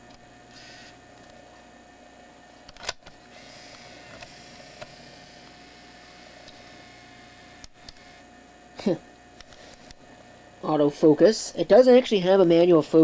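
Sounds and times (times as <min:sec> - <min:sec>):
eject motor whir: 0:00.0 - 0:01.4, 0:02.6 - 0:08.3, 0:09.3 - 0:10.1.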